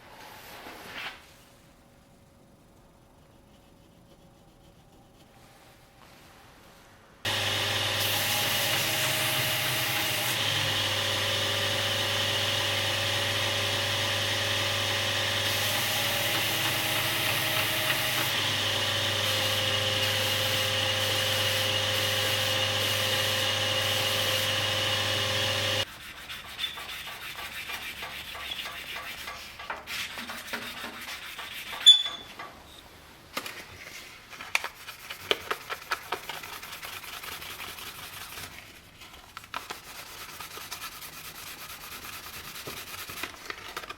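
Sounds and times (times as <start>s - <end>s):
electric sander running: 7.3s - 25.8s.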